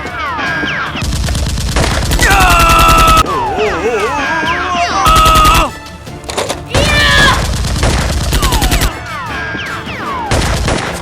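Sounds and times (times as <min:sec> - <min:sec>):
action music: 0:00.0 - 0:11.0
automatic gunfire: 0:01.0 - 0:03.2, 0:07.2 - 0:08.9.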